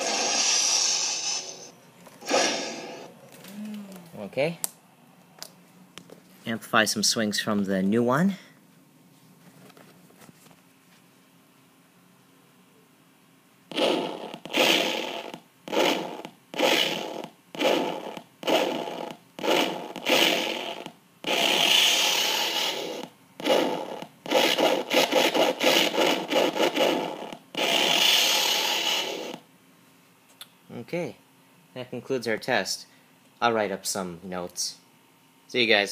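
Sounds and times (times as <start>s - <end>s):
toy sword swing sound effects: 0.0s - 3.1s, 23.7s - 29.3s.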